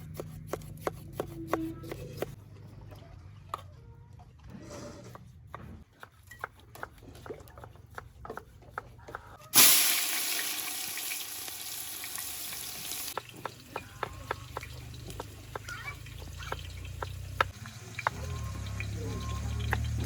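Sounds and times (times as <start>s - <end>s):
food sizzling in hot oil: 9.6s - 13.7s.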